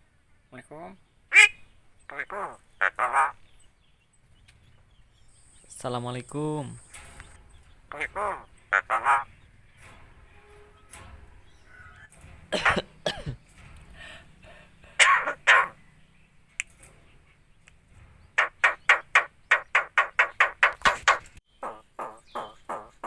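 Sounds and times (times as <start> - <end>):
bird mimicking a cough: 12.5 - 13.4, 15.0 - 15.7.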